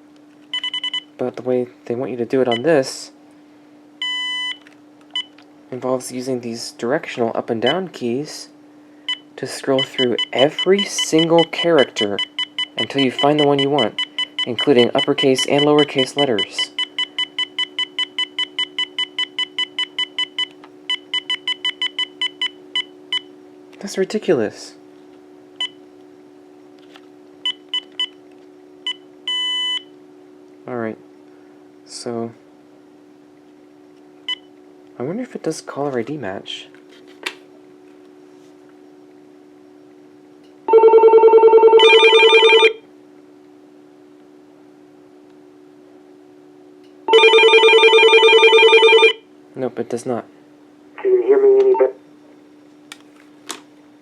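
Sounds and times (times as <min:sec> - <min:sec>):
faint steady hum: 0:00.0 - 0:54.0
handset key beeps: 0:00.5 - 0:01.0, 0:41.8 - 0:42.7
cordless phone electronic trill ring: 0:40.7 - 0:42.8, 0:47.1 - 0:49.2.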